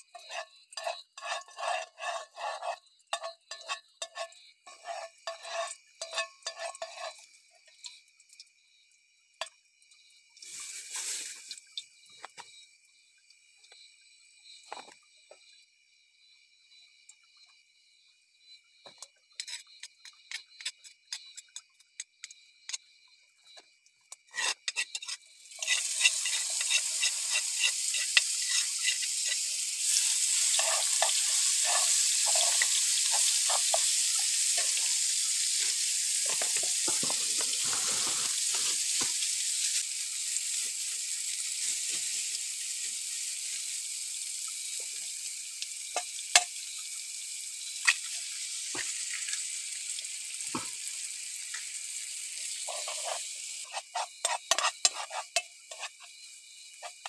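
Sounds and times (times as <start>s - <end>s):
food sizzling in hot oil: 0.0s - 8.7s, 9.3s - 12.3s, 24.1s - 57.0s.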